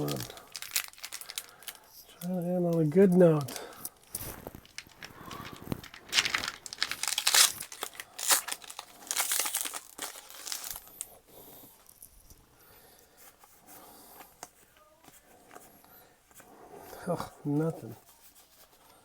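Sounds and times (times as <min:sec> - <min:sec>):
foil wrapper tearing and crinkling: 0:00.0 - 0:11.1
rips and rustles of foil: 0:00.0 - 0:11.1.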